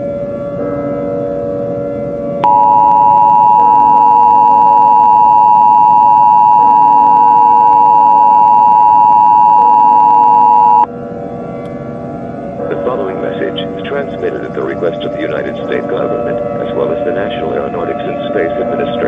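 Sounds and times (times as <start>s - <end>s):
low droning background: 0.0s - 19.0s
two-tone alert signal: 2.4s - 10.9s.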